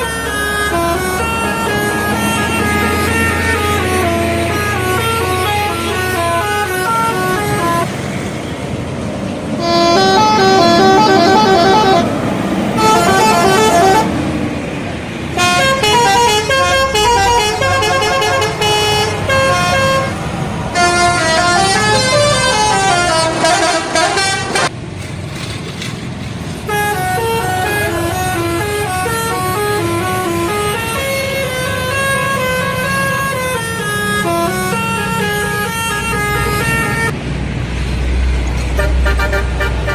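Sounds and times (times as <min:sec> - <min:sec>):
bus musical horn: 0:00.0 - 0:08.0, 0:09.5 - 0:14.3, 0:15.3 - 0:24.7, 0:26.7 - 0:37.2, 0:38.7 - 0:39.9
low engine and road rumble: 0:00.0 - 0:39.9.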